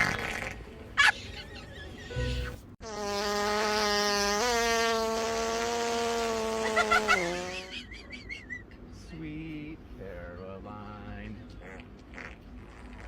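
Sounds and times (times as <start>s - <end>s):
long buzzy fart sound: 2.2s - 7.8s, 11.6s - 13.0s.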